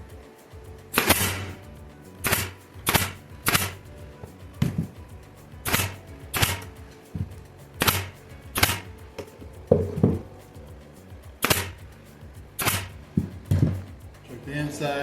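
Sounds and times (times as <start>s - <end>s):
brad nailer firing into wood: 12.6s - 12.9s.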